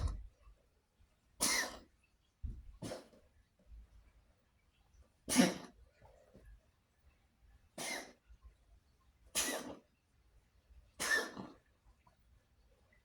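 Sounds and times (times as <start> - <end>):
cat coughing: 1.4 - 1.8, 5.3 - 5.7, 7.8 - 8.2, 9.4 - 9.8, 11.0 - 11.6.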